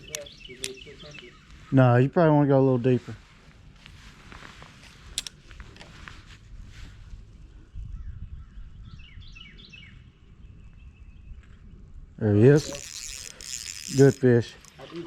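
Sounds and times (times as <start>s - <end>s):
bird chirping: 0.0s - 1.8s, 7.8s - 11.9s
low rumble of wind: 0.0s - 14.8s.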